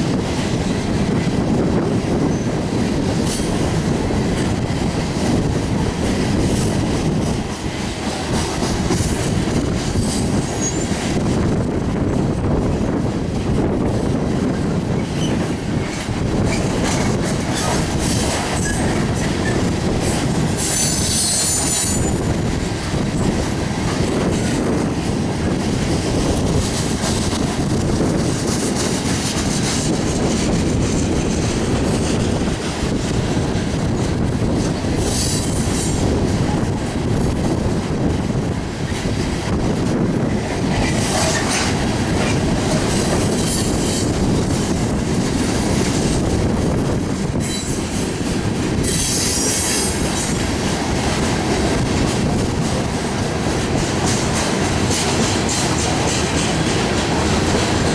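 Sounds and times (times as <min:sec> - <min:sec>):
train cars rumbling past: 0:00.0 - 0:57.9
wheel clatter over rail joints: 0:00.0 - 0:57.9
high-pitched wheel squeals: 0:10.5 - 0:11.0, 0:47.4 - 0:47.9.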